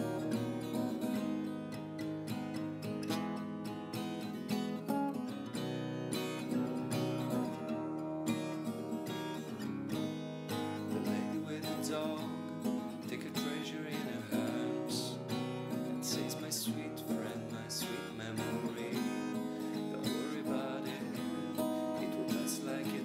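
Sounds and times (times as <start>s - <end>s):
strummed acoustic guitar: 0.0s - 23.0s.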